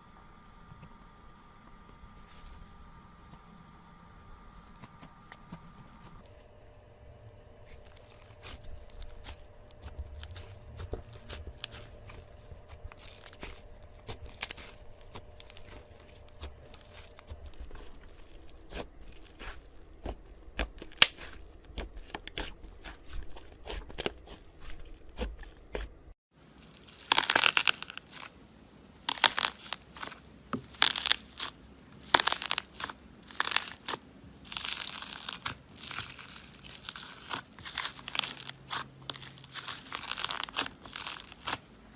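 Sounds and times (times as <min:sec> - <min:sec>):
slime clicking and crackling: 0:07.7 - 0:26.1, 0:26.8 - 0:28.4, 0:29.0 - 0:41.6.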